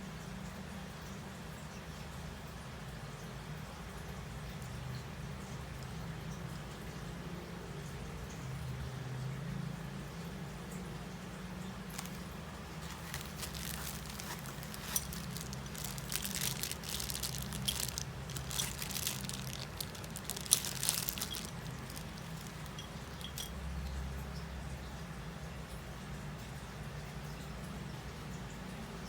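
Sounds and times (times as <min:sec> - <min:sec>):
packaging crinkling: 0:11.9 - 0:23.6.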